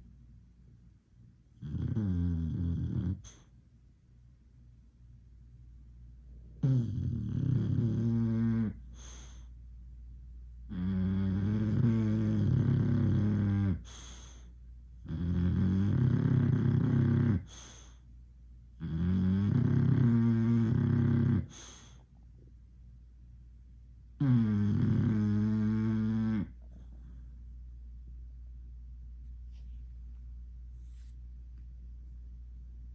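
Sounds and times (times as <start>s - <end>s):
dog snoring: 1.6s - 3.5s, 6.6s - 9.5s, 10.7s - 18.0s, 18.8s - 22.0s, 24.2s - 27.2s.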